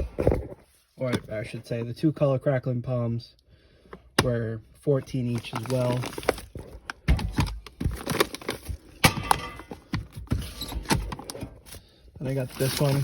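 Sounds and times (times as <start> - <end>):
cardboard boxes knocking and rustling: 5.2 - 11.7.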